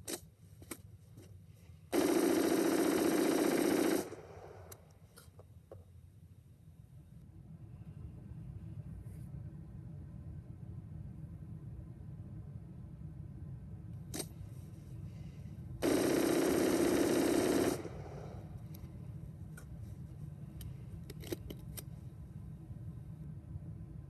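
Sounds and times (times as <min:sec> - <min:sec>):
rifle firing rapid burst: 0:01.9 - 0:04.7, 0:15.8 - 0:18.5.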